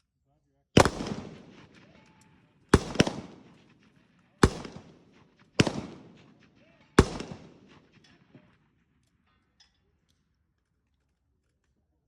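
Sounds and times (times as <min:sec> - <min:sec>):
rifle shots with echo: 0:00.8 - 0:08.9.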